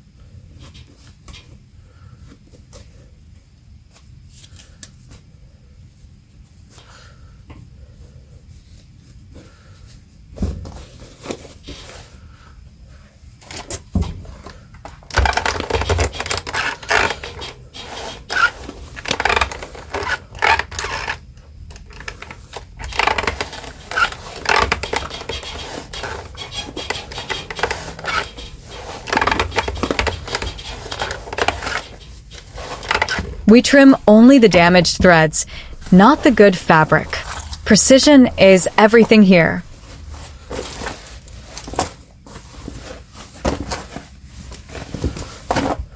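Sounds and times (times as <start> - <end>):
denim scraping and rustling: 21.9 - 33.8.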